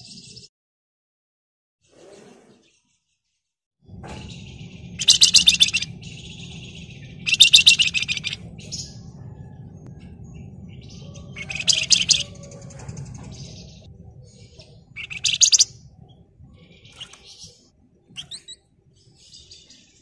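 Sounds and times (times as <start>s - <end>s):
soft bird calls: 3.9s - 20.0s
steady low hum: 3.9s - 20.0s
songbird shrill rattling trills: 4.2s - 20.0s.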